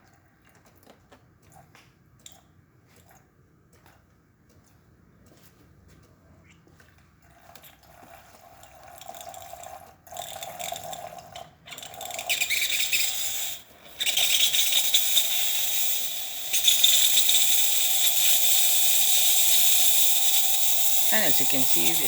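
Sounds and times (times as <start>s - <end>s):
steam wand sputtering: 11.7s - 22.0s
steam hissing: 12.3s - 22.0s.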